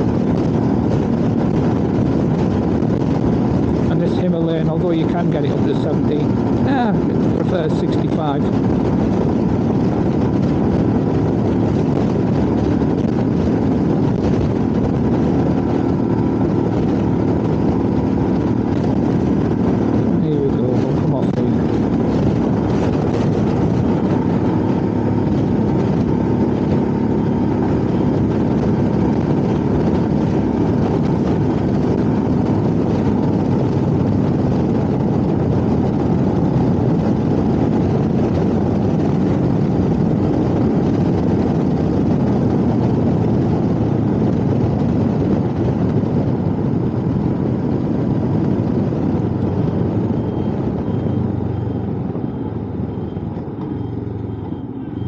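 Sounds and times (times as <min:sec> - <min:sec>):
motorcycle engine running: 0:00.0 - 0:55.0
wind and road rush: 0:00.0 - 0:55.0.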